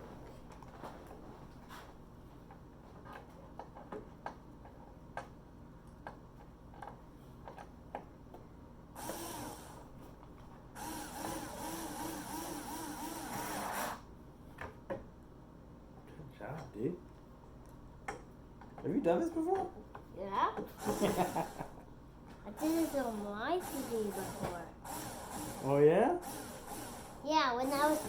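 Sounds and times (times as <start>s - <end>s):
cordless screwdriver whirring: 9.0s - 9.8s, 10.8s - 14.0s, 26.3s - 28.0s.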